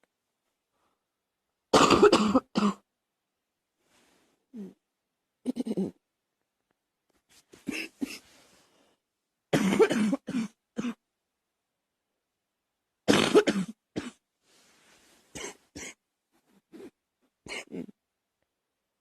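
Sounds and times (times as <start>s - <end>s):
girl coughing: 1.8s - 2.8s, 7.6s - 8.2s, 9.5s - 11.0s, 13.1s - 14.2s, 15.4s - 16.0s, 17.5s - 18.0s.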